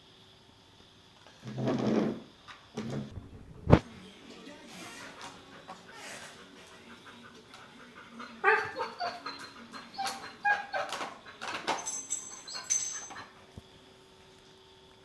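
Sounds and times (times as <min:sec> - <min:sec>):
dog barking and whining: 0:08.1 - 0:13.4.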